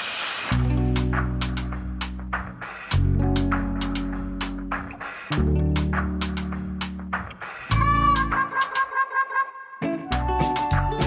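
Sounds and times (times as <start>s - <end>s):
hissing swell: 0.0s - 0.6s
music with bass and guitar: 0.5s - 8.5s, 9.8s - 11.0s.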